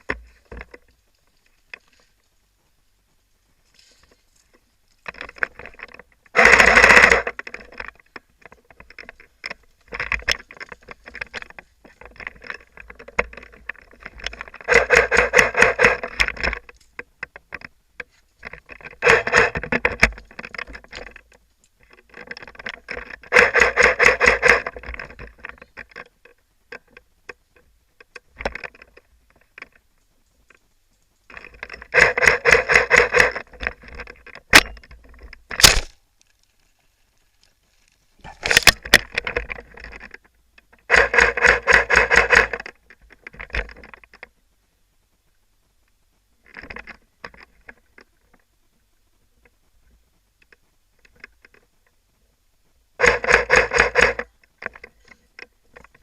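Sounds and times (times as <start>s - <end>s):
clicks and rustling of movement: 0.0s - 56.0s
airsoft gun full-auto fire: 35.6s - 35.9s.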